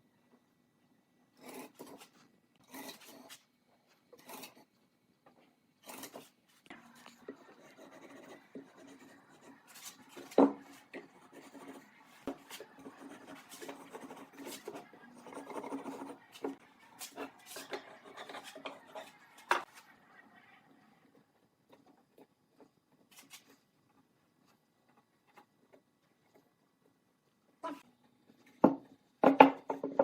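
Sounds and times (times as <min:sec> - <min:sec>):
scraping and rubbing on wood: 0:05.8 - 0:19.7.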